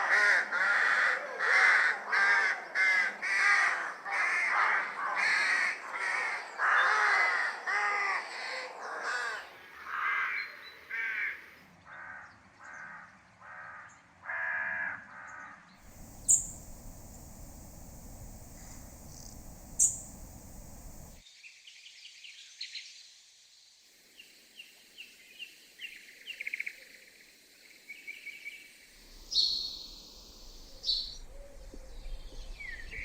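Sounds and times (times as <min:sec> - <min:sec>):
crows cawing: 0:15.9 - 0:21.2
steady low rumble: 0:15.9 - 0:21.2.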